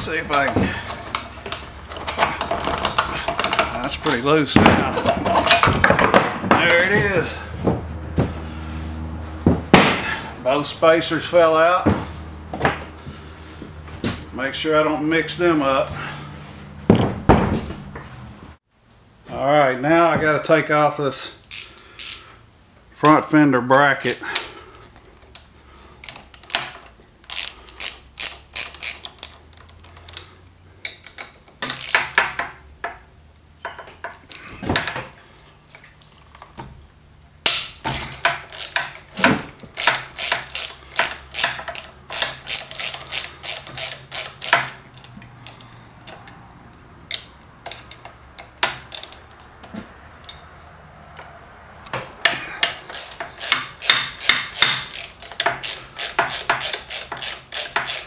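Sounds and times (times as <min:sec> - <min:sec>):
socket ratchet clicking: 0:21.5 - 0:22.2, 0:26.0 - 0:30.3, 0:30.9 - 0:32.3, 0:37.9 - 0:46.3, 0:52.2 - 0:58.0.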